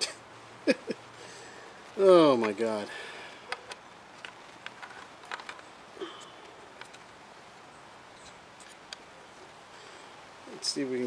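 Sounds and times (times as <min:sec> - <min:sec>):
small parts clicking and tapping: 0:03.5 - 0:05.6.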